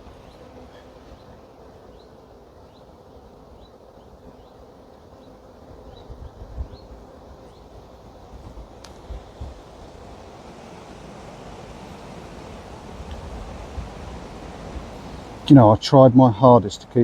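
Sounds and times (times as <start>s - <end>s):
honey bees humming: 0.0s - 17.0s
wind rumbling on microphone: 5.9s - 17.0s.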